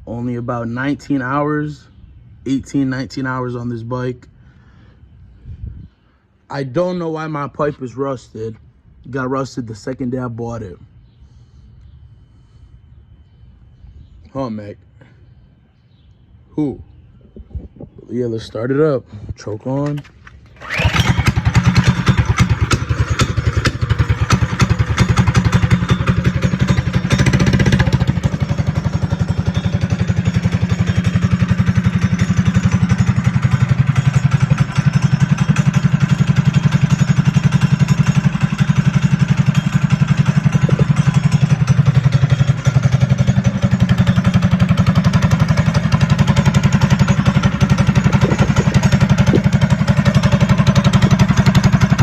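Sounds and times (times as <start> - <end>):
small engine starting and idling: 19.8 - 52.0.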